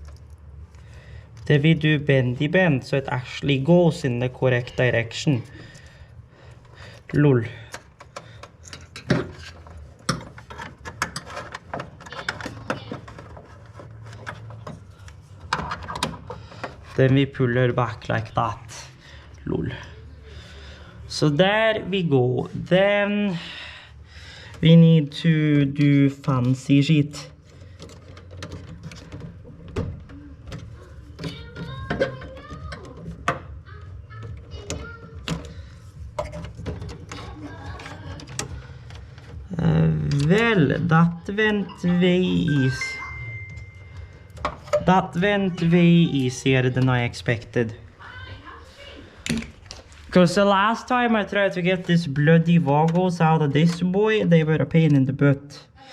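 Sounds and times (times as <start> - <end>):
low steady hum: 0.0 - 55.7
clicks and rattles of hardware: 7.6 - 17.0, 27.4 - 33.5.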